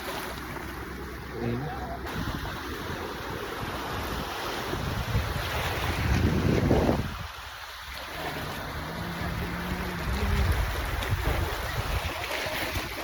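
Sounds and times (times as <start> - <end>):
sea water sloshing: 0.0 - 13.0
wind buffeting microphone: 2.1 - 7.6, 8.4 - 13.0.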